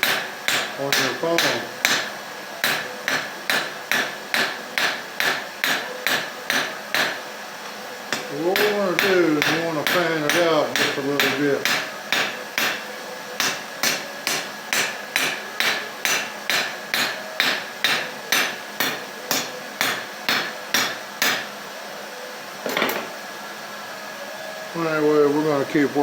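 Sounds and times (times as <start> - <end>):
hammer striking steel on anvil: 0.0 - 7.2, 8.1 - 21.5.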